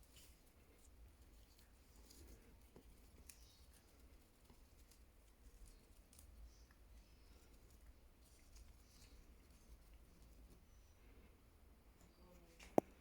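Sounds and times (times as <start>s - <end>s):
soft clicks from cat: 12.0s - 13.0s.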